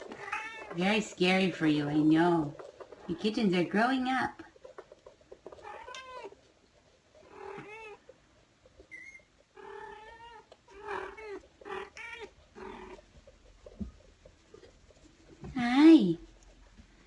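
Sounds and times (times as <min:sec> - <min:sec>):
cat meowing: 0:05.6 - 0:06.4.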